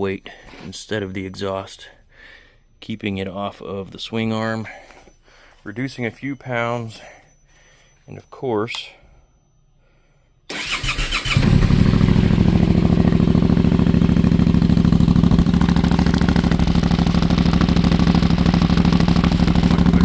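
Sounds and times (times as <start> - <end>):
starter cranking engine: 10.5 - 20.0
motorcycle engine idling: 10.6 - 20.0.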